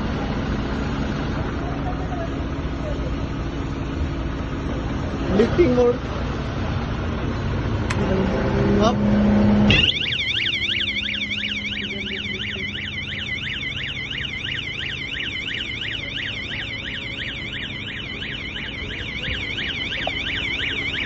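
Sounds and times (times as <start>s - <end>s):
low machine hum: 9.7s - 21.0s
warbling warning alarm: 9.7s - 21.0s.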